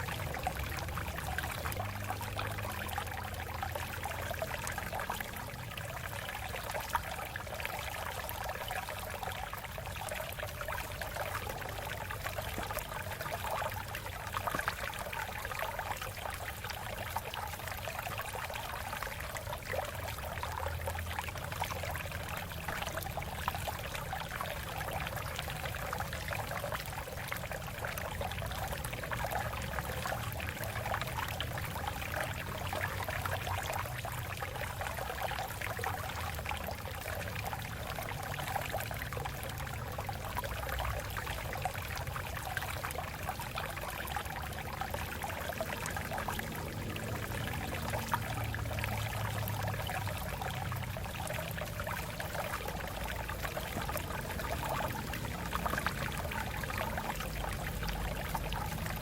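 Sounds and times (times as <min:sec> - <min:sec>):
stream babbling over rocks: 0:00.0 - 0:59.0.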